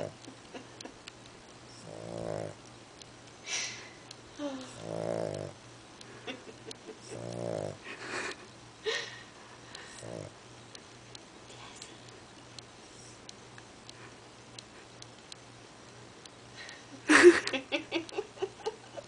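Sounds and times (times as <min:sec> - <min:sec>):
breathy hissing snorts: 0:01.8 - 0:02.6, 0:04.7 - 0:05.6, 0:07.2 - 0:08.1, 0:09.9 - 0:10.4
dog snoring: 0:01.8 - 0:02.6, 0:04.7 - 0:05.6, 0:07.1 - 0:07.9, 0:10.0 - 0:10.4.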